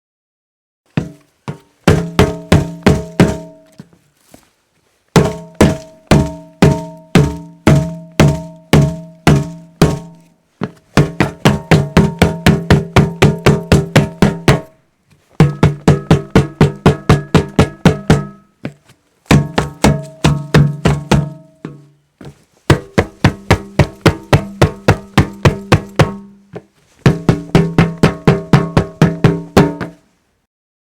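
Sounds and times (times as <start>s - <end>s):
strikes on hollow object ringing: 5.2s - 10.2s, 15.4s - 18.6s, 19.3s - 21.9s.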